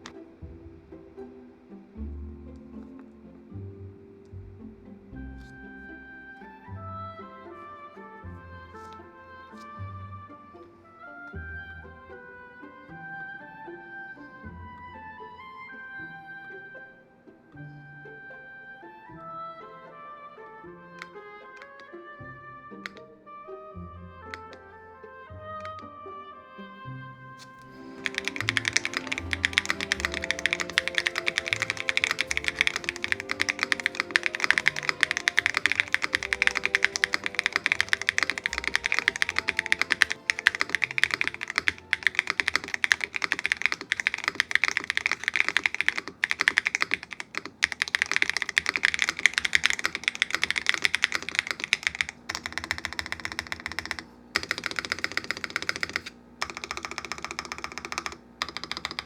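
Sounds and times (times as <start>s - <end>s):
background music: 0.0s - 46.6s
mechanical keyboard typing: 21.0s - 21.9s, 22.8s - 23.0s, 24.4s - 24.6s, 27.4s - 59.0s.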